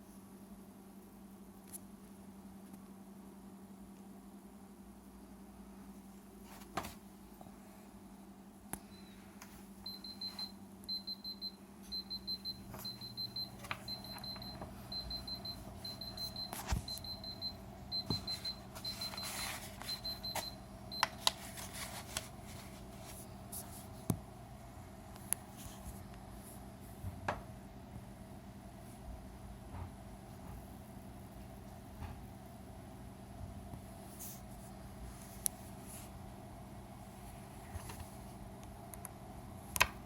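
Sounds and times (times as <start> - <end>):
alarm clock beeping: 9.9 - 21.1.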